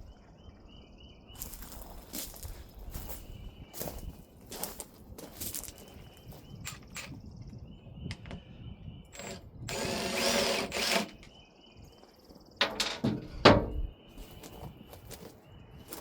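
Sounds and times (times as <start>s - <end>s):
power drill running: 9.1s - 11.3s.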